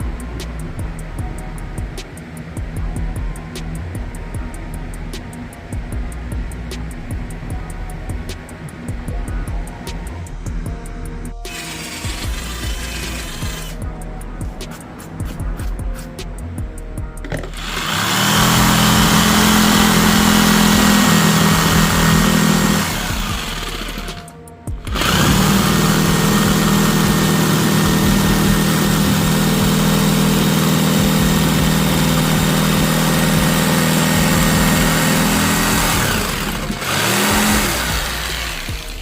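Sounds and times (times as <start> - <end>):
electric motor machine humming: 11.4 - 14.0, 17.2 - 39.0.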